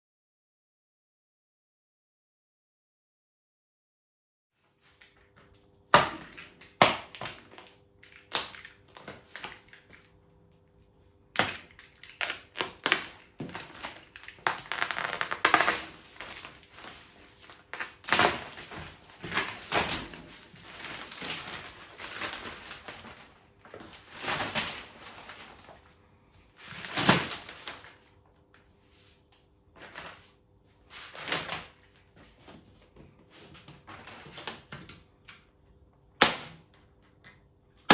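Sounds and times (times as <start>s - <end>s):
packaging crinkling and rustling: 11.4s - 25.9s, 26.6s - 28.2s, 29.8s - 32.8s.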